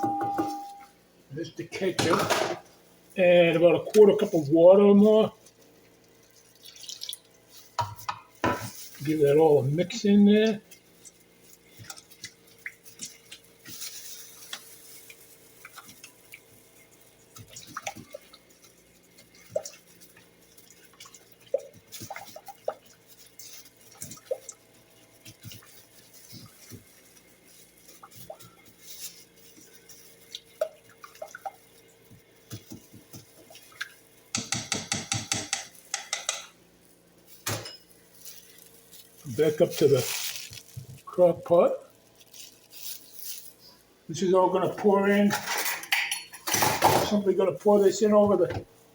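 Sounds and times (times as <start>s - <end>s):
utensil stirring sauce in bowl: 3.1s - 36.6s.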